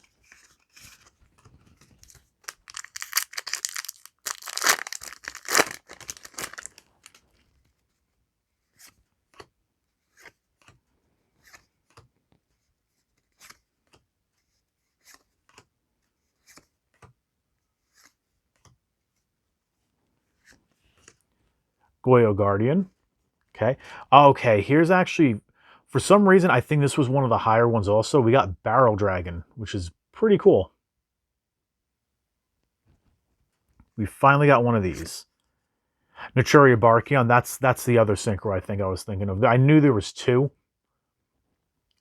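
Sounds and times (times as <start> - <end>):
foil wrapper tearing and crinkling: 2.5 - 7.2.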